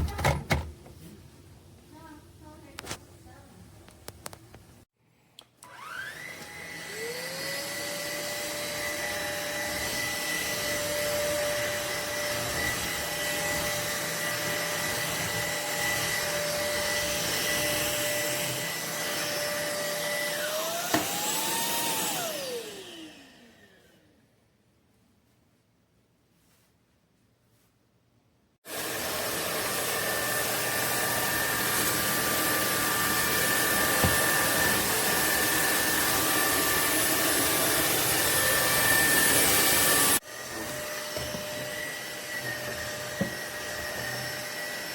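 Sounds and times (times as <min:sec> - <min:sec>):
vacuum motor whining: 0:05.6 - 0:24.1, 0:28.7 - 0:44.9.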